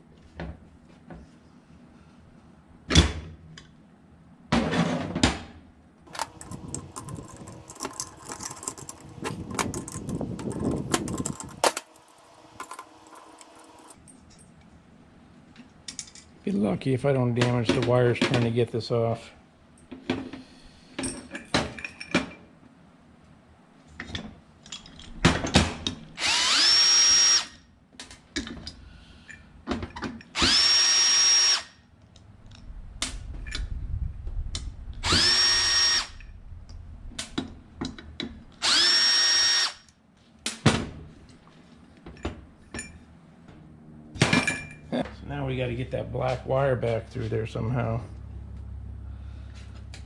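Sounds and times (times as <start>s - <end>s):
handling clicks and knocks: 6.1s - 14.0s
power tool whining: 6.1s - 14.0s.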